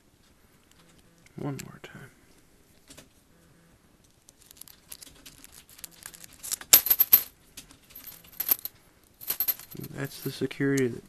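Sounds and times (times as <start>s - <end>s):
lock picking clicks and scratches: 4.2s - 7.1s.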